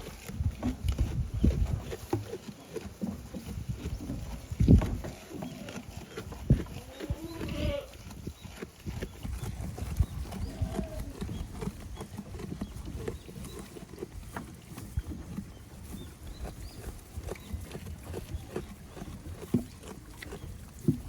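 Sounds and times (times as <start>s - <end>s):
wind buffeting microphone: 0.1s - 2.0s, 3.4s - 14.4s
goat bleating: 6.6s - 8.1s.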